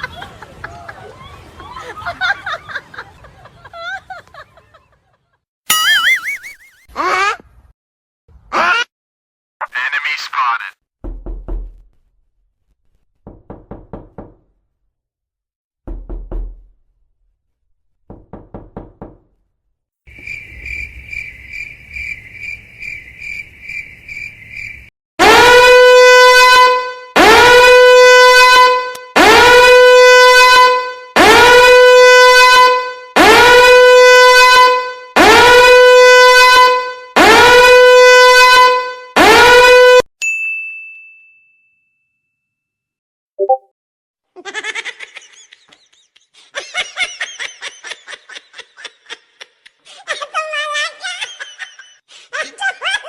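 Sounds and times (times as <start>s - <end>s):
high pulsing beep: 5.7s - 6.8s
loud horn blasts: 25.2s - 40.0s.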